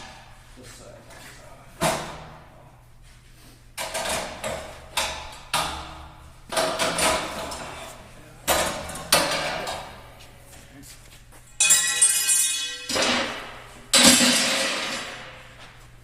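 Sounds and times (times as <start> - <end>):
metal clanks and knocks: 3.8 - 7.8, 8.4 - 10.1, 11.6 - 15.6.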